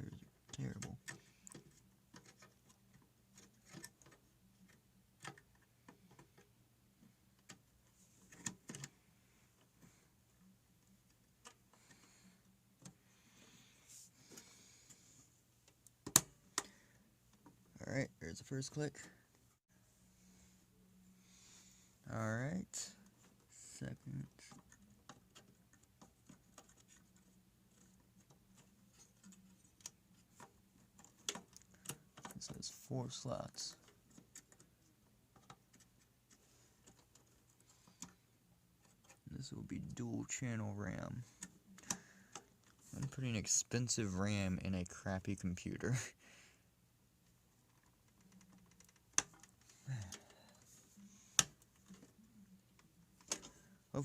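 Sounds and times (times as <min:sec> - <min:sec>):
clicks and taps handling computer parts: 0:00.4 - 0:06.5, 0:07.4 - 0:09.0, 0:15.6 - 0:16.7, 0:27.7 - 0:32.6, 0:47.7 - 0:50.6, 0:51.3 - 0:53.7
clicks and taps inside computer case: 0:15.7 - 0:16.7, 0:27.7 - 0:32.6, 0:47.7 - 0:50.2, 0:53.2 - 0:53.6.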